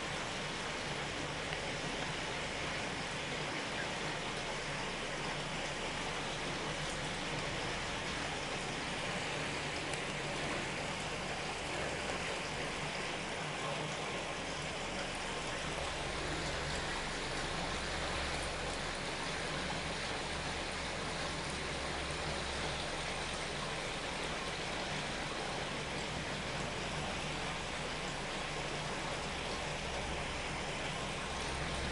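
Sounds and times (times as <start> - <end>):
water rushing through channel: 0.0 - 31.9.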